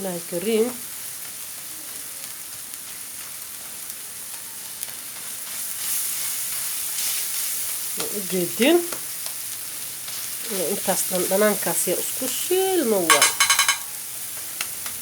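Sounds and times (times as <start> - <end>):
food sizzling in a frying pan: 0.0 - 15.0.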